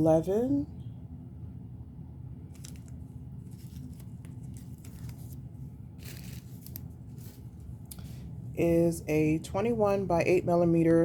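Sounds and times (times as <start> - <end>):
low background hum: 0.0 - 11.0
packaging rustling and crinkling: 2.5 - 8.2.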